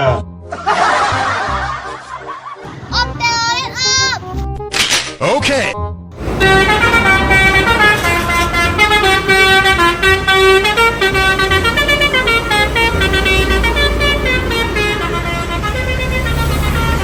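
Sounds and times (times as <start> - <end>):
low engine rumble: 6.1 - 17.0
multi-tone bus horn tune: 6.2 - 17.0.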